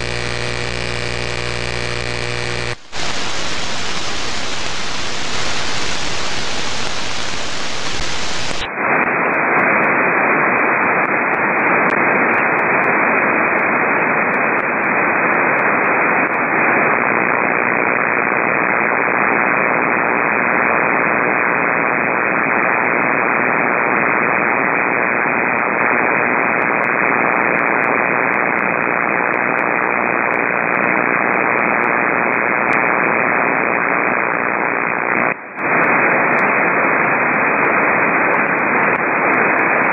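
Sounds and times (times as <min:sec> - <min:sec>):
power line static hiss: 0:00.0 - 0:08.7.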